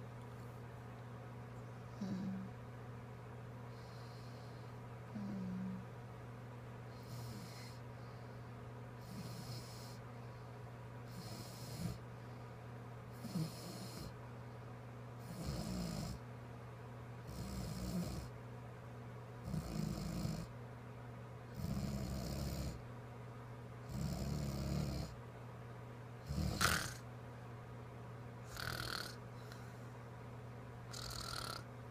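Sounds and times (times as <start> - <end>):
girl snoring: 2.0 - 2.5, 5.1 - 5.8, 26.3 - 27.0, 28.5 - 29.2, 30.9 - 31.7.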